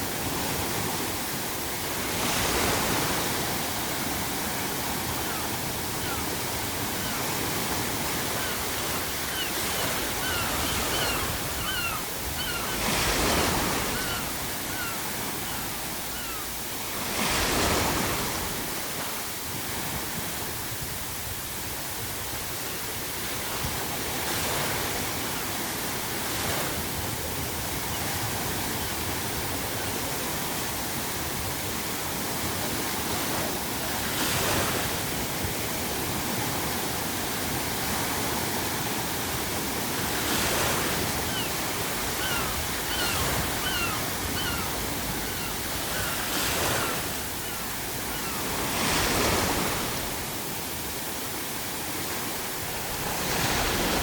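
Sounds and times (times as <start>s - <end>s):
ocean waves breaking: 0.0s - 54.0s
seagull crying: 5.1s - 16.6s, 41.1s - 49.7s.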